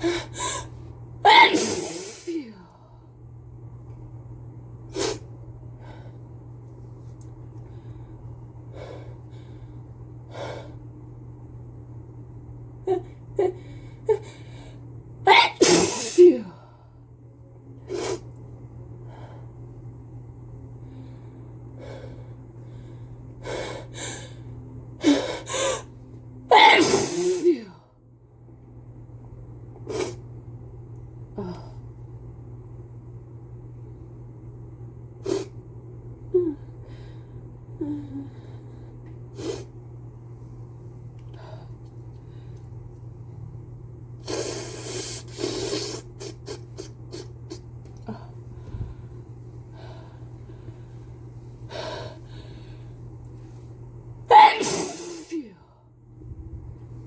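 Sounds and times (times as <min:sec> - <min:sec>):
person breathing: 0:48.0 - 0:53.0.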